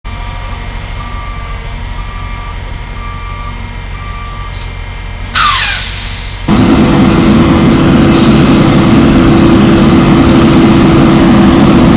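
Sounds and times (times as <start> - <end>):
truck engine hum: 0.0 - 11.9
truck reversing alarm beeping: 0.1 - 7.7.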